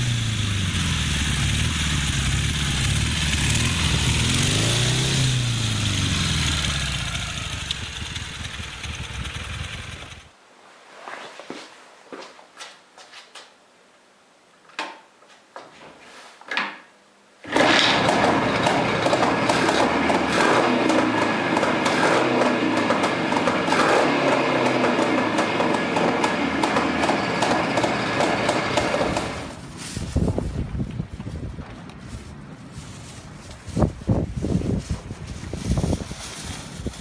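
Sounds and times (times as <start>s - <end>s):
motorcycle engine running: 0.0s - 10.3s, 28.7s - 37.0s.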